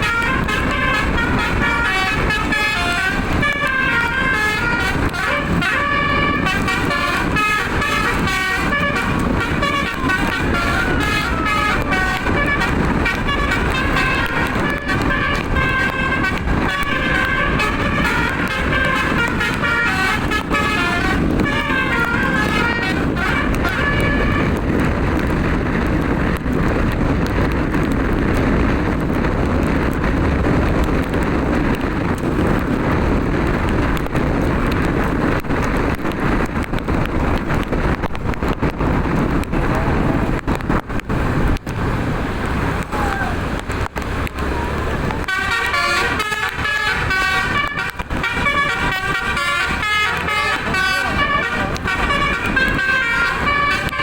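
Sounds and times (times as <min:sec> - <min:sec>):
bus horn playing a tune: 0:00.0 - 0:25.8, 0:44.4 - 0:54.0
rushing road noise: 0:00.0 - 0:54.0.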